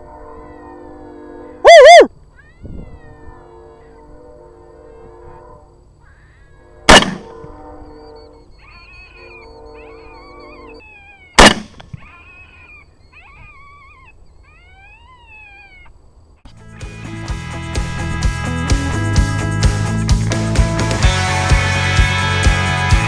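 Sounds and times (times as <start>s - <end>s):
wavering howl-like wailing call: 0.0s - 16.0s
rifle shots: 6.9s - 7.3s, 11.4s - 11.9s.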